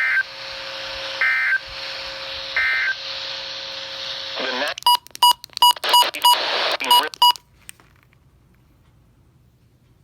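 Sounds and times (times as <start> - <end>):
short electronic beeps: 4.9 - 7.4.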